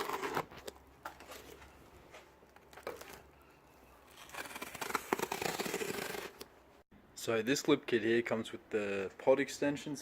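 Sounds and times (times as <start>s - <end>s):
packaging tearing and crinkling: 4.1s - 6.4s.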